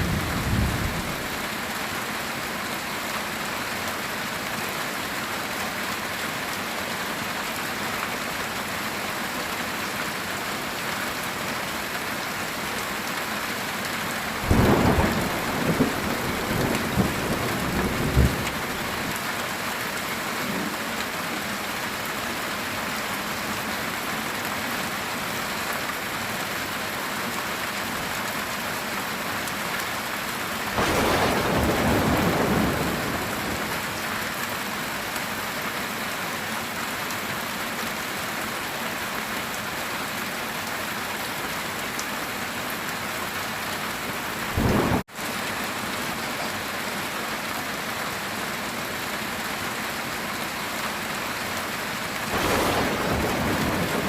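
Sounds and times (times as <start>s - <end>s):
thunder cracking and rumbling: 0.0s - 1.3s, 14.4s - 19.1s, 30.8s - 34.0s, 44.6s - 45.0s, 52.3s - 54.0s
heavy rain on a tin roof: 0.0s - 54.0s.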